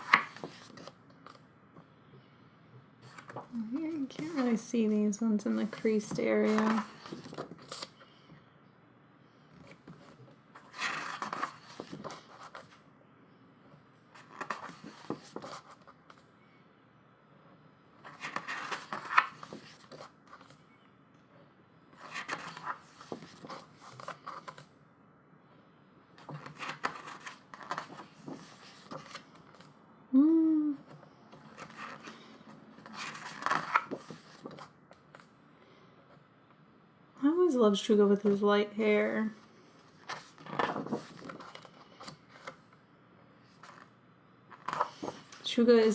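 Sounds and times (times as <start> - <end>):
book pages turning: 0.0 - 1.4, 3.0 - 4.6, 5.5 - 8.0, 9.6 - 12.8, 14.1 - 16.2, 18.0 - 20.6, 21.9 - 24.7, 26.2 - 29.7, 31.3 - 35.3, 39.9 - 42.7, 43.4 - 43.9, 44.5 - 45.9
person humming: 30.1 - 30.9.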